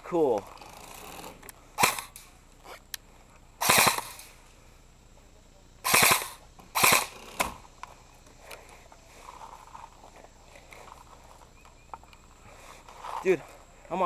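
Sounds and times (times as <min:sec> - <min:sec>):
airsoft gun bursts: 0:01.8 - 0:02.3, 0:03.6 - 0:04.4, 0:05.8 - 0:07.6.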